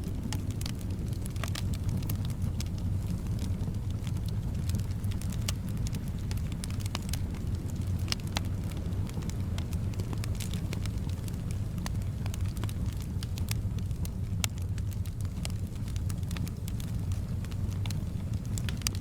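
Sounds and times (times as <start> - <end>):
soft wind rumble: 0.0 - 19.0
wood fire crackling and popping: 0.0 - 19.0.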